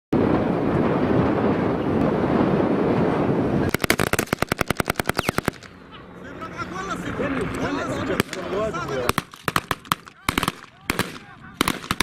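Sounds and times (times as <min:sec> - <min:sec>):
steady rushing noise: 0:00.2 - 0:12.0
automatic gunfire: 0:03.7 - 0:05.7, 0:09.0 - 0:12.0.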